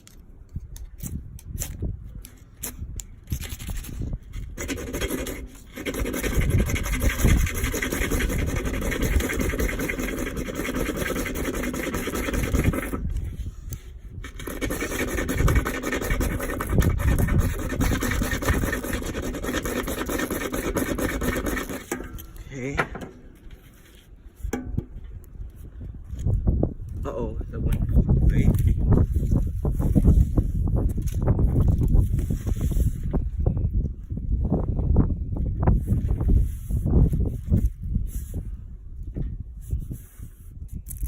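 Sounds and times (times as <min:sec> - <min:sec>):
strong wind gusting on microphone: 0:00.0 - 0:22.9, 0:24.2 - 0:41.0
rubbing and scraping: 0:02.4 - 0:25.7, 0:28.5 - 0:33.2.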